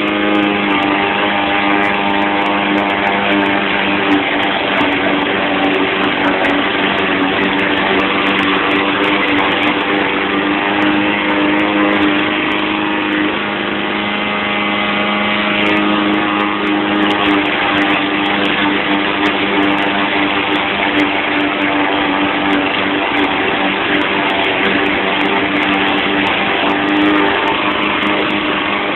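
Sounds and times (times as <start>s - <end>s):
lawn mower engine running: 0.0s - 28.9s.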